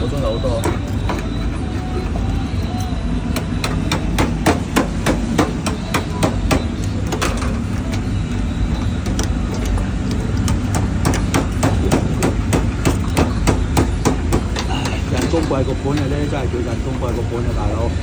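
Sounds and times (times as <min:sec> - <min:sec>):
hand tool tapping and scraping: 0:02.7 - 0:16.2.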